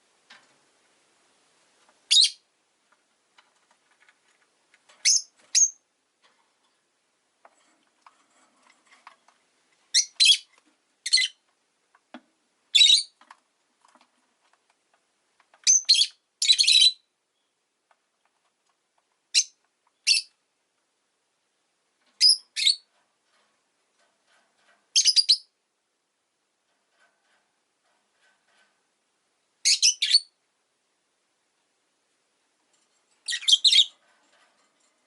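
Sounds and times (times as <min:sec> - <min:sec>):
lovebirds chirping: 0:02.1 - 0:02.5, 0:05.0 - 0:05.9, 0:09.9 - 0:11.4, 0:12.7 - 0:13.2, 0:15.6 - 0:17.7, 0:19.3 - 0:20.4, 0:22.2 - 0:22.9, 0:25.0 - 0:25.6, 0:29.6 - 0:30.4, 0:33.2 - 0:34.0.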